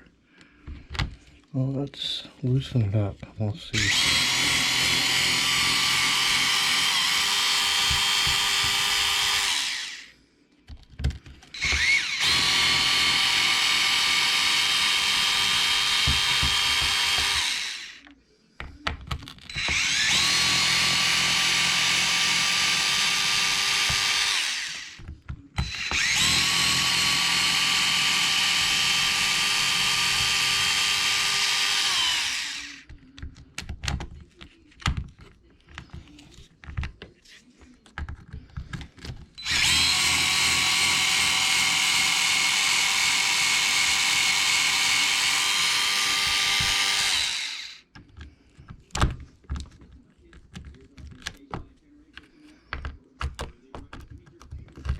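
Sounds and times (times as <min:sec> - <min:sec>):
cordless power driver spinning: 0:03.8 - 0:10.1, 0:11.5 - 0:18.1, 0:19.5 - 0:32.9, 0:39.4 - 0:47.8.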